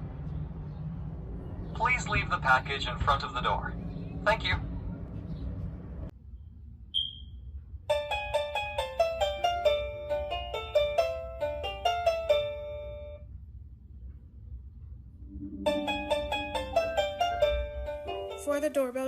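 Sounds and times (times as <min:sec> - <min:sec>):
short high beep: 0:07.0 - 0:07.4.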